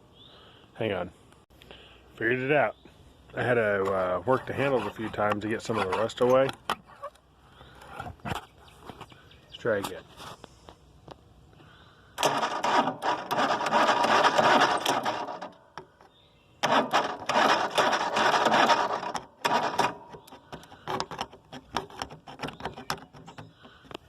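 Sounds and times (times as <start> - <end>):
starter motor cranking engine: 12.2 - 15.6, 16.6 - 23.8.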